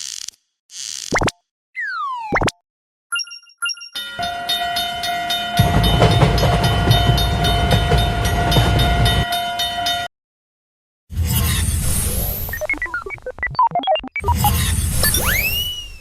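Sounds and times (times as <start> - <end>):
short electronic beeps: 3.1 - 4.0
crossing alarm ringing: 3.2 - 10.1
train rumbling past: 4.1 - 10.1.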